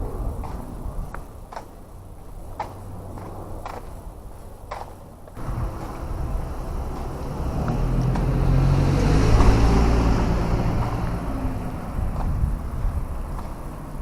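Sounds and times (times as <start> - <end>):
vehicle passing: 5.4 - 14.0.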